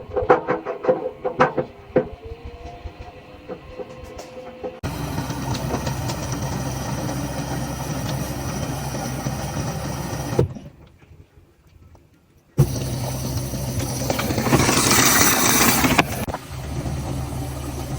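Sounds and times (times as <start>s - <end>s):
washing machine motor hum: 0.0s - 10.8s, 12.6s - 17.9s.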